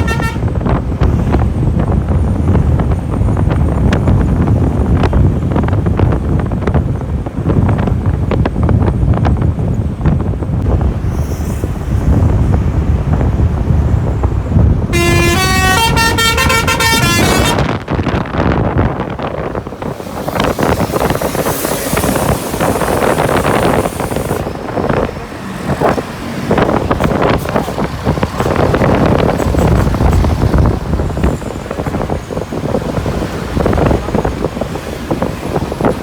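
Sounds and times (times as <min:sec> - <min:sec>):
musical air horn tune: 0:00.0 - 0:00.5, 0:14.9 - 0:17.8
engine rumble: 0:00.0 - 0:36.0
wind noise on microphone: 0:00.0 - 0:36.0.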